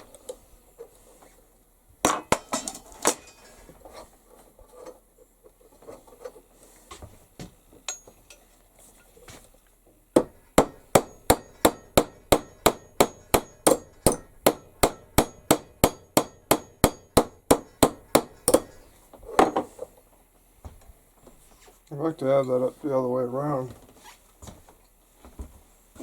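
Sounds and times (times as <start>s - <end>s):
hammer striking a rivet: 10.2s - 18.8s.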